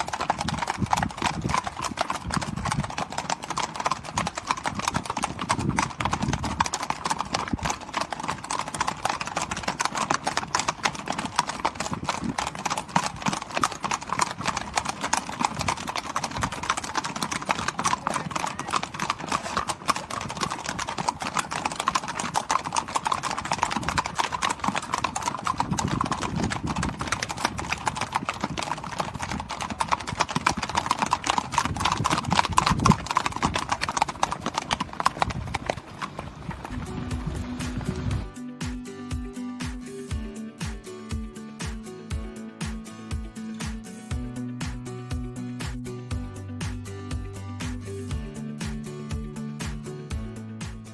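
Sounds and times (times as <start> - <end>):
horse hooves clattering on bridge: 0.0 - 45.8.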